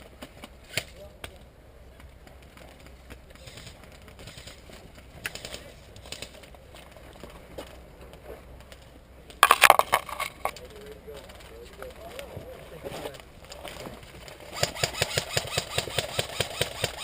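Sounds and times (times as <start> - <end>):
sharp clicks and cracks: 9.4 - 11.9.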